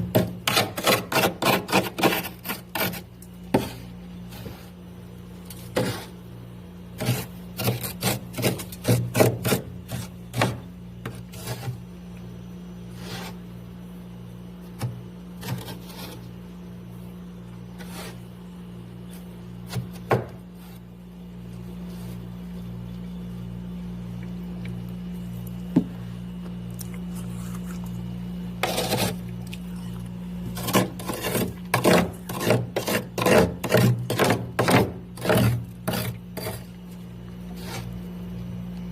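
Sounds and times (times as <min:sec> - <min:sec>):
ice being scraped in freezer: 0:00.0 - 0:04.8, 0:05.4 - 0:06.3, 0:06.9 - 0:11.9, 0:12.8 - 0:13.5, 0:14.6 - 0:16.4, 0:17.7 - 0:18.4, 0:28.6 - 0:38.2
steady low hum: 0:00.0 - 0:38.9.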